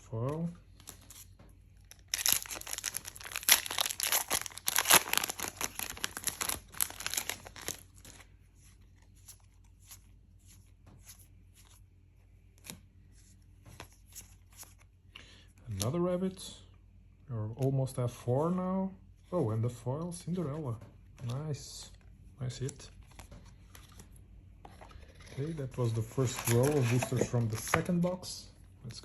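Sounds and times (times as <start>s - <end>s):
foil wrapper tearing open: 1.9s - 8.2s, 26.2s - 27.2s.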